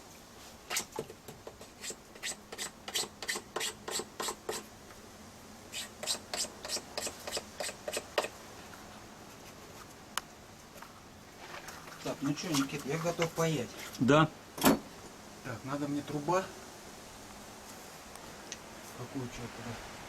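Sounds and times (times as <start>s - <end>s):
hand tool rasping on hard surface: 1.6s - 4.6s, 5.7s - 8.3s.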